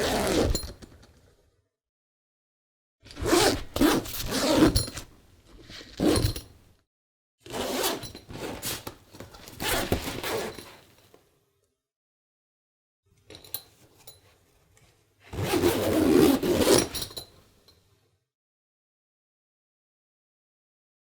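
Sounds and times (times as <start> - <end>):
zipper being zipped: 0.0 - 0.6, 3.1 - 5.1, 5.7 - 6.5, 7.5 - 10.7, 15.3 - 17.0.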